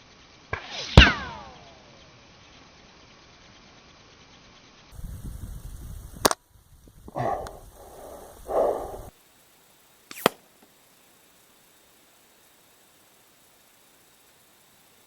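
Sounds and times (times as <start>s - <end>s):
sharp crack of bullet: 0.5s - 1.9s, 10.1s - 10.8s.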